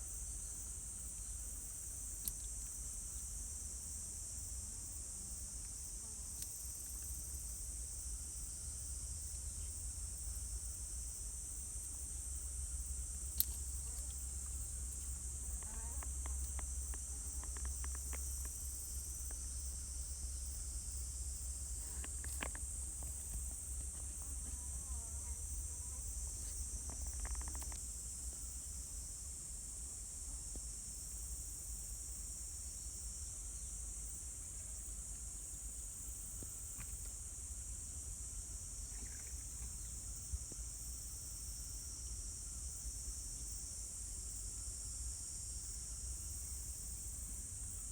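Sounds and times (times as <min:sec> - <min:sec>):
high-pitched insect chorus: 0:00.0 - 0:47.9
faint clicks: 0:26.5 - 0:27.9.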